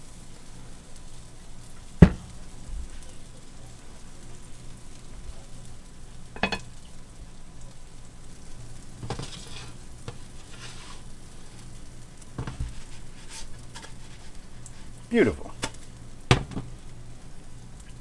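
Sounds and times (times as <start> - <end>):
batter sizzling in a skillet: 0.0 - 18.0
utensil scraping a pan: 8.8 - 17.0.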